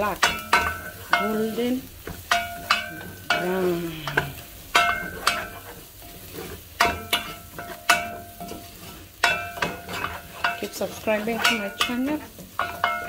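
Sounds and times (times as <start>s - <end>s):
garlic sizzling in oil: 0.0s - 13.0s
spoon clinking against pot: 6.8s - 13.0s.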